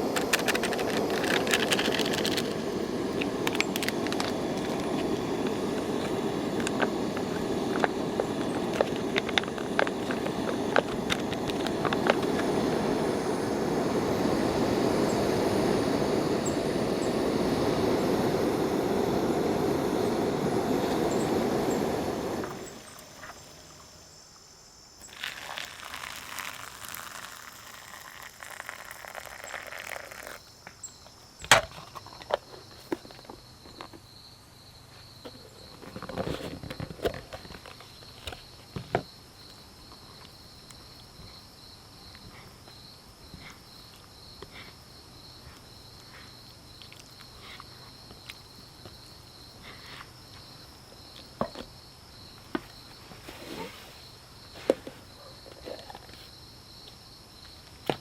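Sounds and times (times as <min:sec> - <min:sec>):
light crackles: 0:00.0 - 0:13.2, 0:25.0 - 0:30.4.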